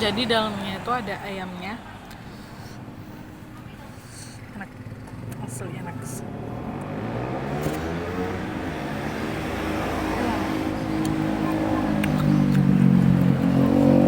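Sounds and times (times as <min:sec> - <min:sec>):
vehicle engine passing by: 0:04.8 - 0:14.0.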